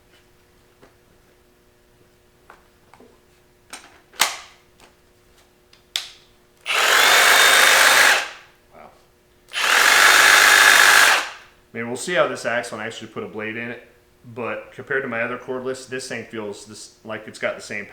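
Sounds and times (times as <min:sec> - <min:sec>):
reciprocating saw running: 0:06.7 - 0:08.4, 0:09.5 - 0:11.4.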